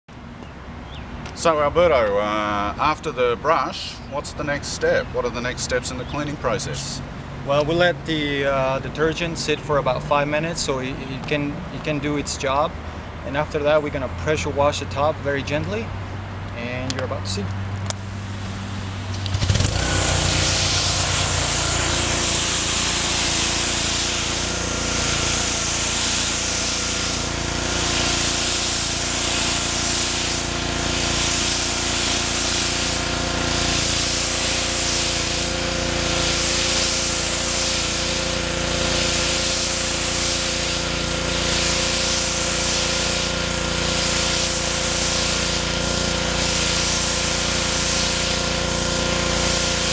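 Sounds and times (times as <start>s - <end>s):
pressure washer spray hissing: 18.0s - 49.9s
washer motor humming: 18.0s - 49.9s.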